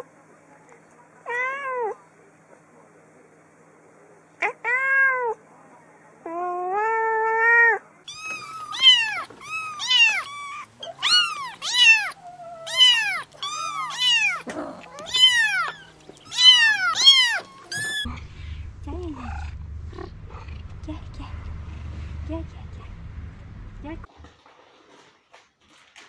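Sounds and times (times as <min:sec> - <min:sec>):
cat meowing: 0:06.6 - 0:18.1.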